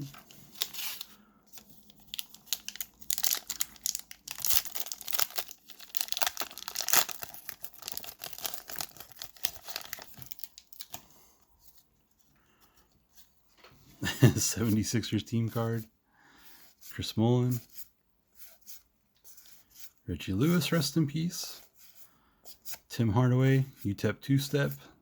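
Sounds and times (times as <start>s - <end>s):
wrapper tearing and crinkling: 0.1s - 11.0s.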